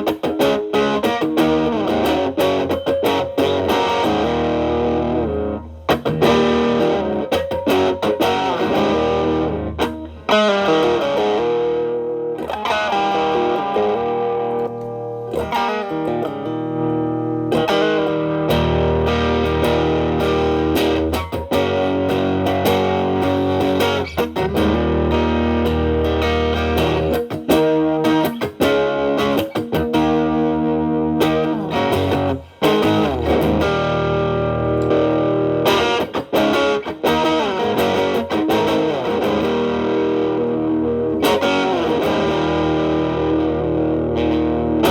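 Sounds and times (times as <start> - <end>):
overdriven electric guitar: 0.0 - 44.9.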